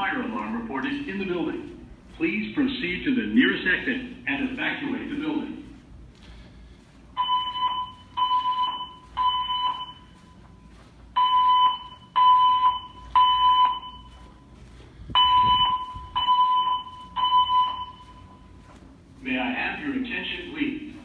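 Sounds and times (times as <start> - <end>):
fire alarm beeps: 0.0 - 5.8, 7.2 - 18.8.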